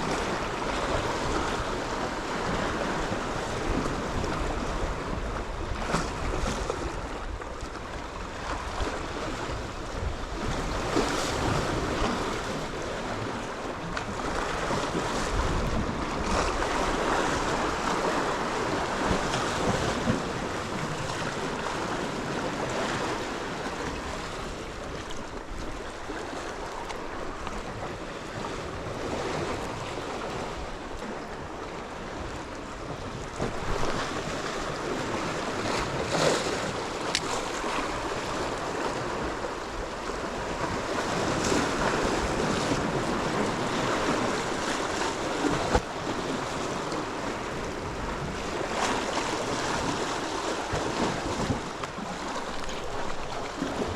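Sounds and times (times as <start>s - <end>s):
wind buffeting microphone: 0.0s - 31.1s
sea surf washing ashore: 0.0s - 53.9s.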